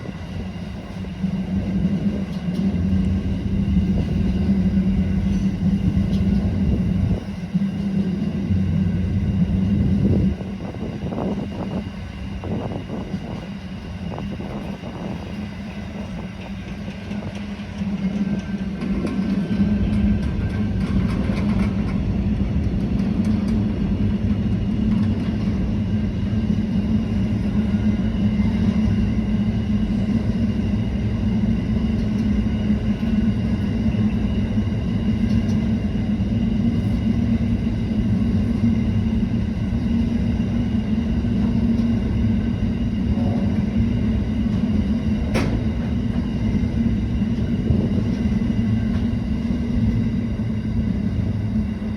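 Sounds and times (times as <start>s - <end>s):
train wheels rumbling on rails: 0.0s - 51.9s
sharp train clack: 12.4s - 25.8s, 41.2s - 51.9s.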